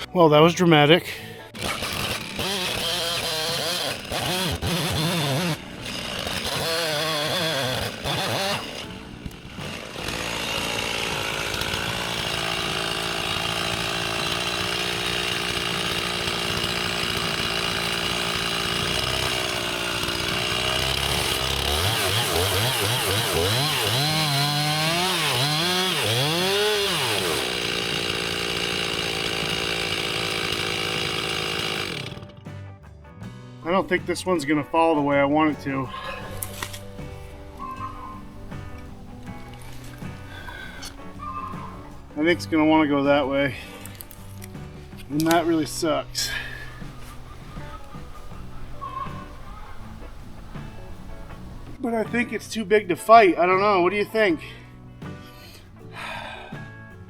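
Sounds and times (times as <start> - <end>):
chainsaw running at high revs: 1.5 - 32.4, 39.2 - 42.5, 43.1 - 47.7.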